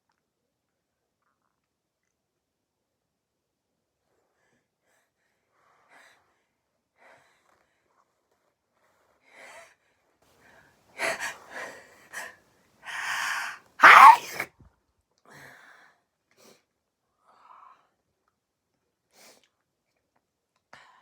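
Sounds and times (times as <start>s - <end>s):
person sneezing: 11.0s - 11.4s, 12.9s - 14.4s
person gasping for breath: 11.0s - 11.6s, 12.9s - 14.4s.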